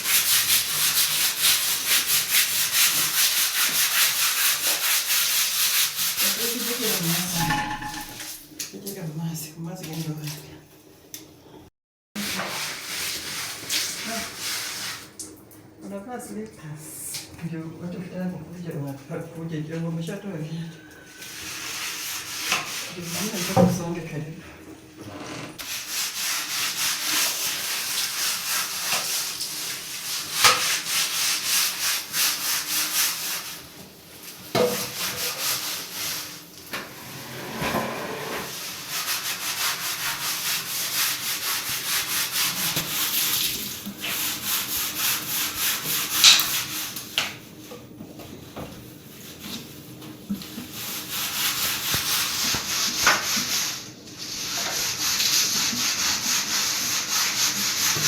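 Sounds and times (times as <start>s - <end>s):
sharp knocks: 7.4s - 8.3s.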